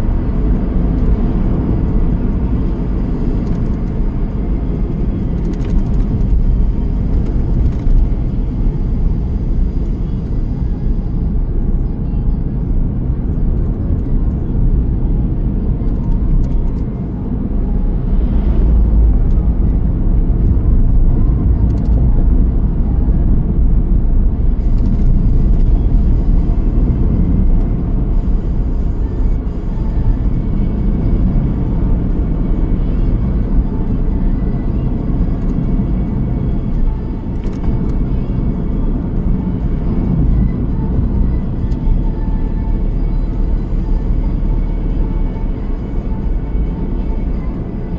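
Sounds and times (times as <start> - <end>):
car road and engine rumble: 0.0 - 47.9.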